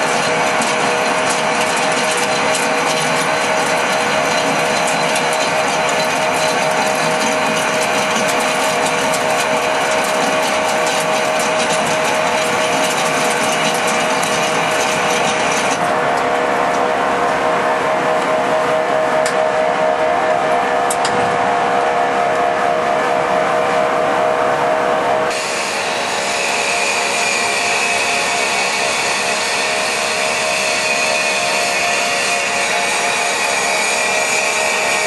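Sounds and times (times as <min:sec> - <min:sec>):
high mechanical rattle: 0:00.0 - 0:16.0
lathe gear whine: 0:00.0 - 0:35.0.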